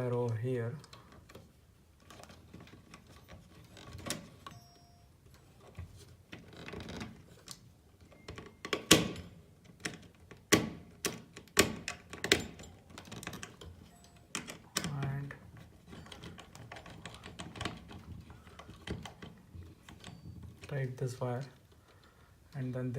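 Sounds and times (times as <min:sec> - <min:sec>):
tools clicking and knocking: 0:06.3 - 0:20.8.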